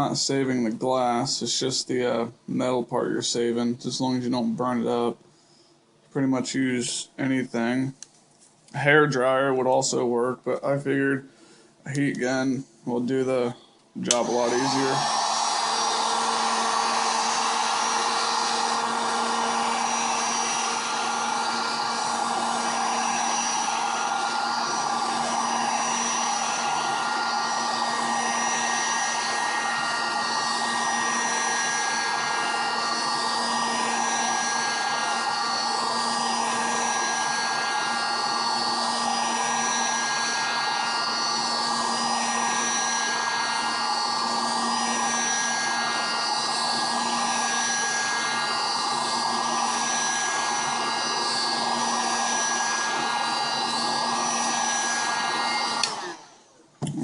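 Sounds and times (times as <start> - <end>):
heat gun blowing: 14.0 - 56.6.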